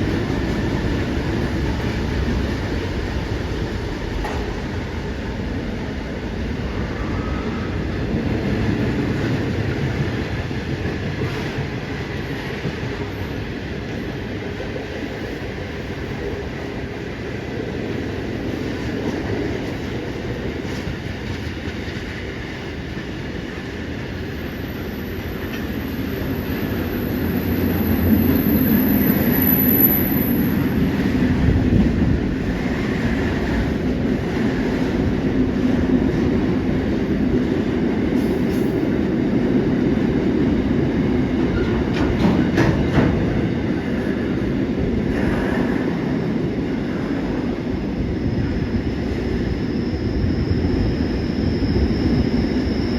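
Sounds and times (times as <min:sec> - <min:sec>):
train wheels rumbling on rails: 0:00.0 - 0:52.9.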